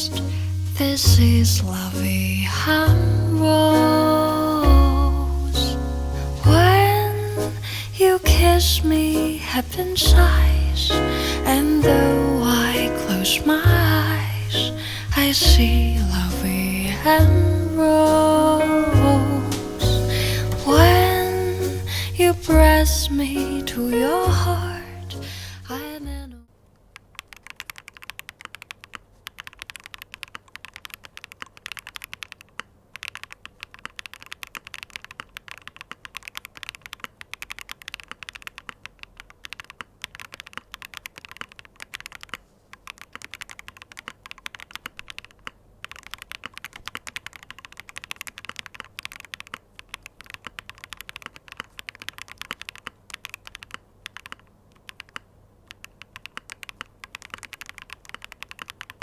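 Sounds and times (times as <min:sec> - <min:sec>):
mechanical keyboard typing: 0:26.9 - 0:59.0.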